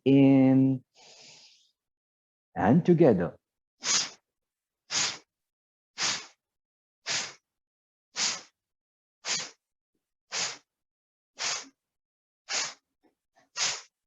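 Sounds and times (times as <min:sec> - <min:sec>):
forceful nasal exhalations: 0:03.8 - 0:04.2, 0:04.9 - 0:05.3, 0:06.0 - 0:06.4, 0:07.1 - 0:07.4, 0:08.2 - 0:08.6, 0:09.2 - 0:09.6, 0:10.3 - 0:10.7, 0:11.4 - 0:11.8, 0:12.5 - 0:12.9, 0:13.5 - 0:14.0.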